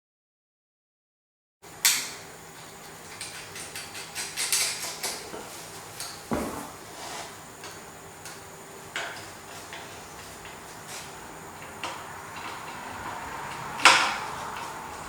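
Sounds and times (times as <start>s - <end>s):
sharp loud knock: 6.3s - 6.8s.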